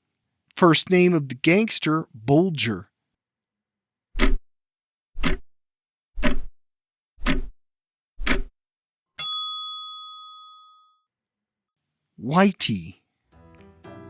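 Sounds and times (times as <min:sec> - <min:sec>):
timer ticks: 0:05.2 - 0:05.4, 0:06.2 - 0:06.5, 0:07.2 - 0:07.5, 0:08.2 - 0:08.5
bell-like ding: 0:09.2 - 0:11.0.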